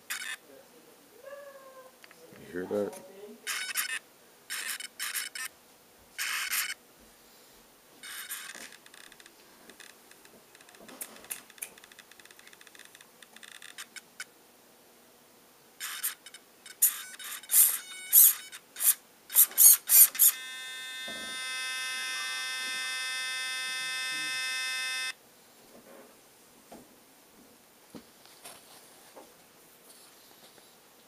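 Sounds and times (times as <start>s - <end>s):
toy car motor whining: 3.5s - 5.5s, 6.2s - 6.8s, 8.0s - 9.0s, 15.8s - 25.2s.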